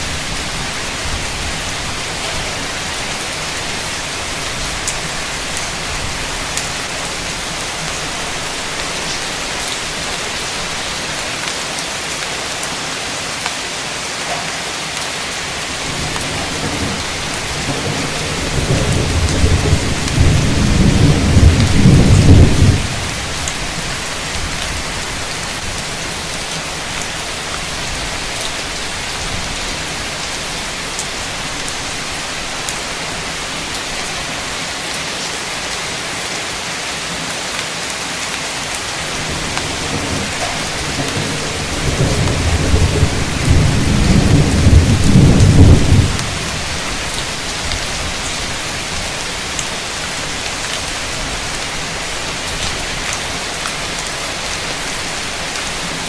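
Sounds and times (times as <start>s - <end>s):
heavy rain hissing: 0.0s - 56.0s
thunder rumbling: 15.7s - 23.8s, 39.0s - 48.2s.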